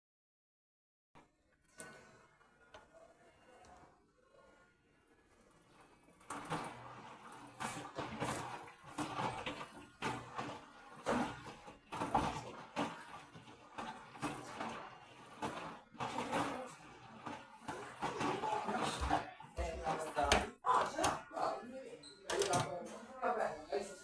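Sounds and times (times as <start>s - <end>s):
washing machine drum swishing: 5.3s - 21.3s.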